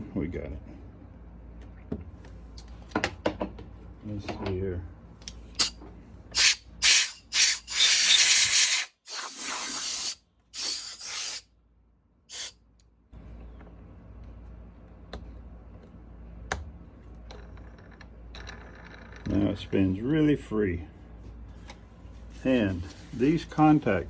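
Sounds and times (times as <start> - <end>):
compressed air blasts: 5.6 - 11.5, 12.3 - 12.6.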